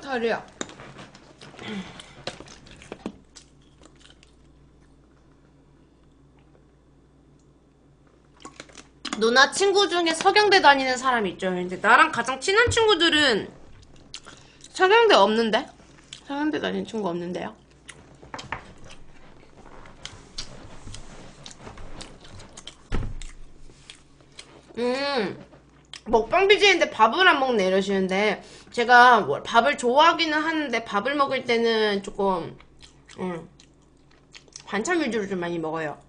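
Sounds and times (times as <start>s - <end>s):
steady low hum: 0.0s - 36.0s
chewing: 0.5s - 5.4s, 13.7s - 14.8s, 17.6s - 24.8s, 32.6s - 34.7s
dull thump: 22.9s - 23.3s.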